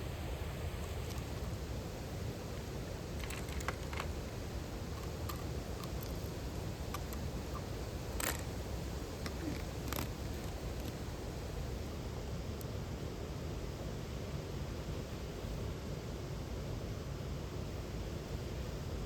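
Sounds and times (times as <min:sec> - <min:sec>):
light clicks and taps: 0:02.6 - 0:04.2.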